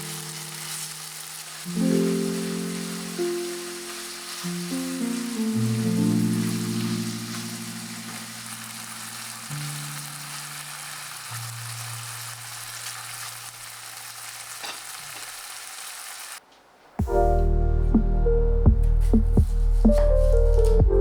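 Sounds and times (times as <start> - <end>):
soft background music: 0.0 - 12.8, 17.0 - 21.0
food sizzling in a pan: 0.0 - 16.4.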